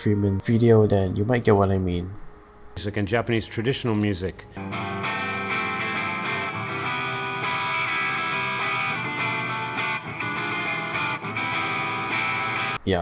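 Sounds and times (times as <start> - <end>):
distorted electric guitar chords: 4.6 - 12.8.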